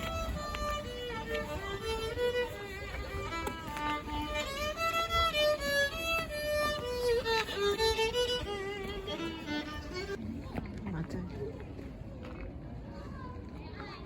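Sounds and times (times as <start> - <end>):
violin melody: 0.0 - 10.2.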